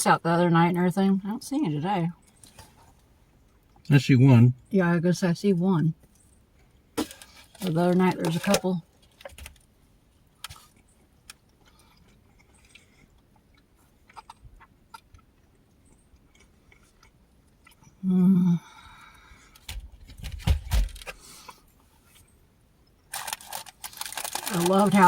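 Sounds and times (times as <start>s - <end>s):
person chewing: 10.4s - 18.0s.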